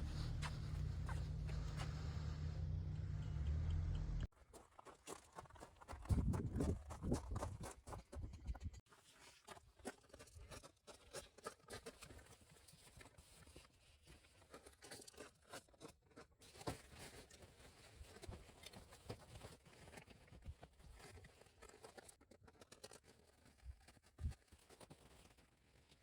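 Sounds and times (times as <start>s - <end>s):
low rumble and rustling: 0.0s - 4.3s.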